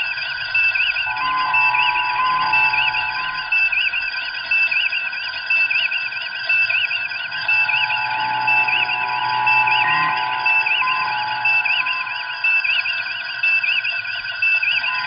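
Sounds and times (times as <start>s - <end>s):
steady electronic humming tones: 0.0s - 15.0s
high warbling electronic tone: 1.0s - 4.2s, 7.3s - 13.9s.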